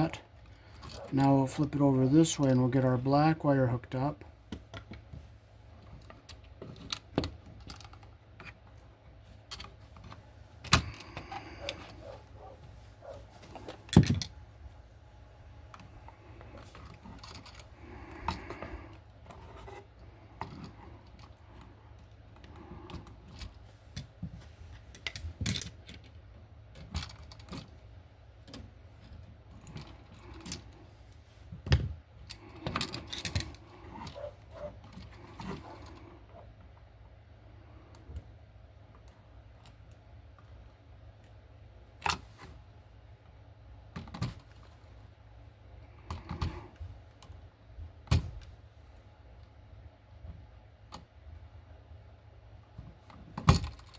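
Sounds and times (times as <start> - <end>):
hand tools clicking and scraping: 9.4 - 14.3, 32.2 - 36.5.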